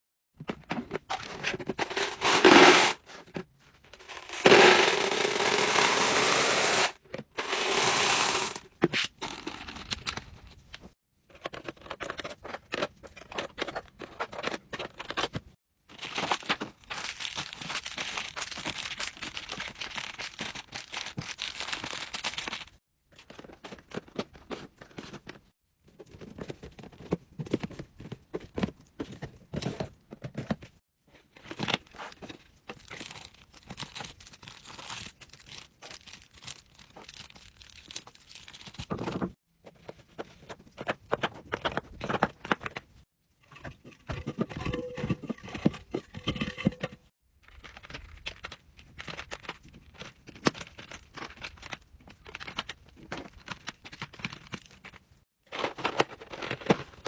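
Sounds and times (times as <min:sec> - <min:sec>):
rough tearing noise: 0:04.0 - 0:08.6.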